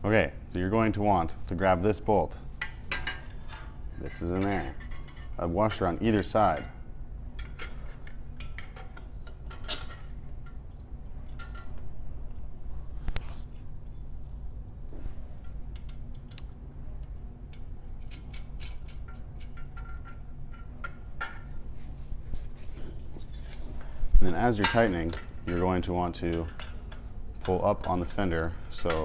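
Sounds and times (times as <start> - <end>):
steady low hum: 0.0 - 29.0
metallic clicks of bolt and washers: 15.7 - 21.5.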